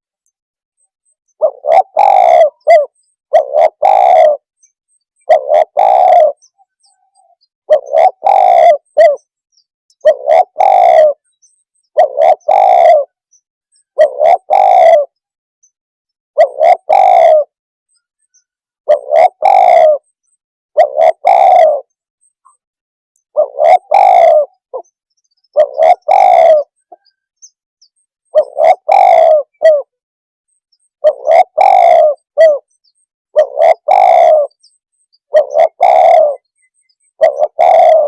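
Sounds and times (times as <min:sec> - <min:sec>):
dove cooing: 0:01.3 - 0:04.6, 0:05.2 - 0:09.3, 0:10.0 - 0:13.2, 0:13.9 - 0:15.2, 0:16.4 - 0:17.6, 0:18.9 - 0:20.2, 0:20.8 - 0:22.0, 0:23.3 - 0:24.9, 0:25.5 - 0:27.2, 0:28.3 - 0:30.0, 0:31.0 - 0:38.0.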